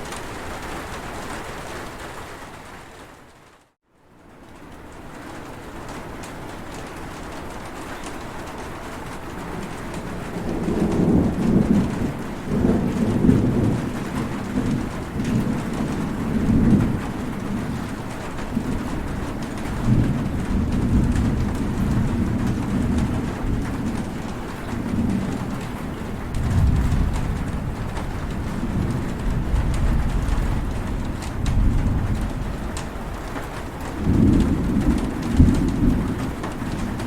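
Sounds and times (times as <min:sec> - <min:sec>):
heavy rain: 0:00.0 - 0:37.0
thunder rumbling: 0:05.5 - 0:37.0.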